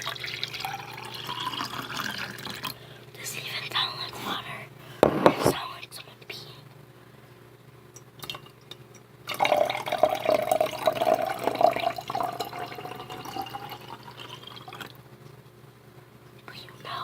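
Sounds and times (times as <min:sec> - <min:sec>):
water poured into a glass: 0:00.0 - 0:02.8, 0:09.3 - 0:14.9.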